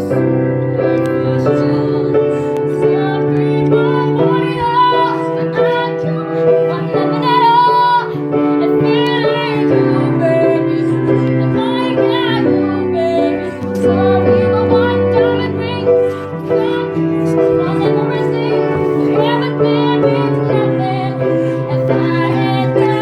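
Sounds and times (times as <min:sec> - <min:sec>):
held instrumental notes: 0:00.0 - 0:23.0
person singing: 0:00.0 - 0:23.0.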